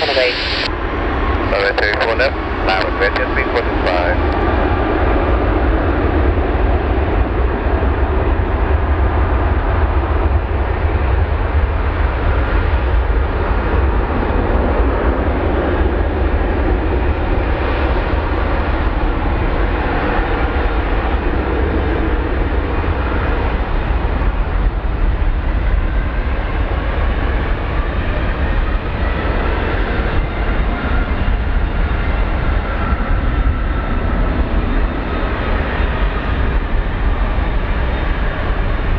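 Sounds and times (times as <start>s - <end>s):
faint gliding whine: 0.0s - 0.7s, 1.5s - 4.3s
jet engines at takeoff: 0.0s - 38.9s.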